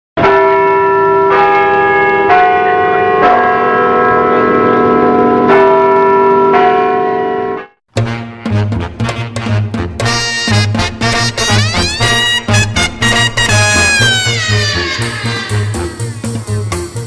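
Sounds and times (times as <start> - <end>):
bells ringing: 0.2 - 7.7
brass band music with drums: 7.9 - 17.0.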